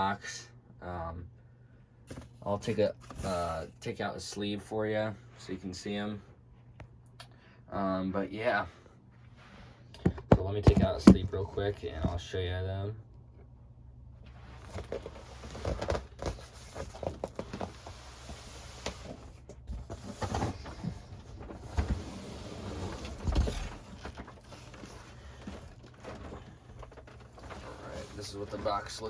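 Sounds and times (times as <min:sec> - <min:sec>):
cardboard rustling and scraping: 0:02.1 - 0:03.7, 0:09.2 - 0:12.3, 0:14.2 - 0:29.0.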